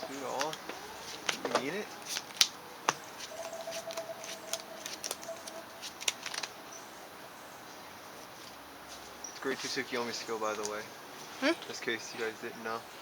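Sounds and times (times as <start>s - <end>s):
trading cards clicking and tapping: 0.3s - 6.5s.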